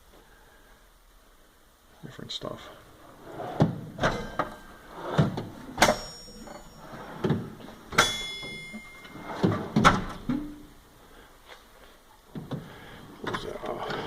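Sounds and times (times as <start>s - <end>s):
drawers sliding open and shut: 2.9s - 10.6s, 12.3s - 14.0s
sharp metal clanks: 5.8s - 6.8s, 7.9s - 10.0s.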